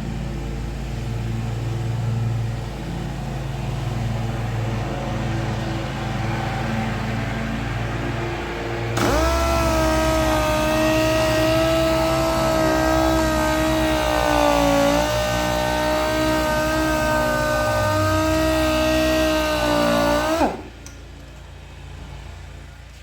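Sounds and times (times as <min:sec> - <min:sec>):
low hum: 0:00.0 - 0:22.2
dual-action sander running: 0:09.0 - 0:21.0.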